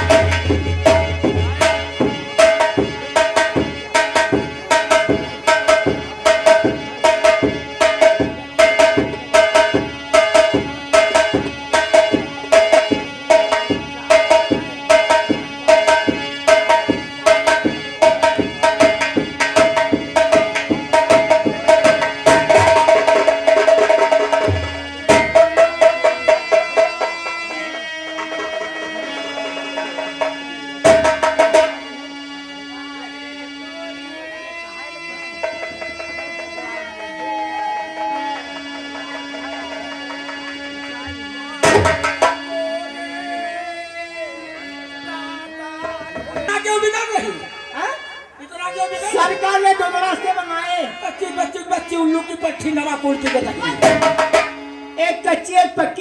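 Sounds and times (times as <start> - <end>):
drum in steady rhythm: 0.0 - 32.0, 35.3 - 42.8, 45.8 - 47.3, 52.2 - 56.0.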